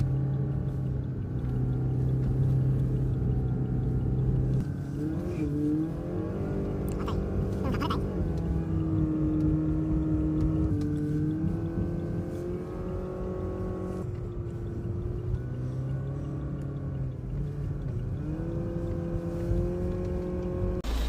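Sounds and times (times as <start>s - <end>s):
car engine running: 0.0s - 21.0s
low road rumble: 0.0s - 21.0s.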